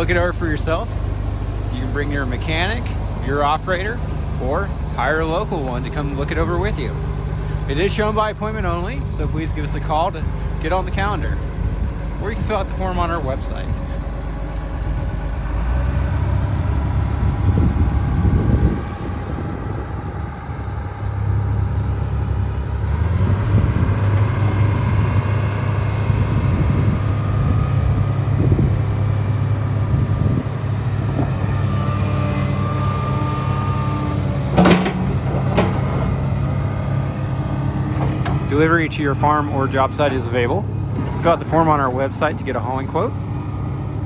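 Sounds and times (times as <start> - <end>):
excavator diesel engine running: 0.0 - 44.0.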